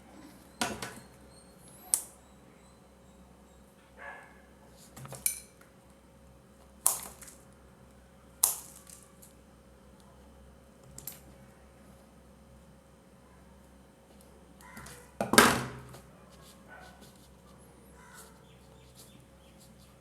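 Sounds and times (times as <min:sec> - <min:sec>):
small parts clicking and clattering: 0:11.0 - 0:11.3.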